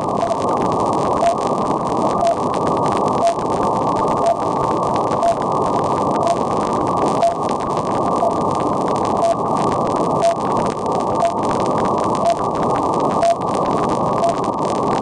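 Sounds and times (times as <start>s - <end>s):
shortwave radio static: 0.0s - 15.0s
short beeps: 5.2s - 5.4s, 9.2s - 9.4s, 10.2s - 10.4s, 11.2s - 11.4s, 13.2s - 13.4s, 14.2s - 14.4s.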